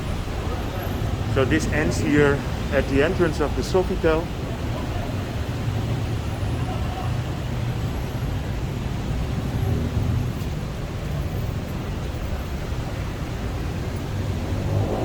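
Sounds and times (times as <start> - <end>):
road traffic rumble: 0.0 - 15.0.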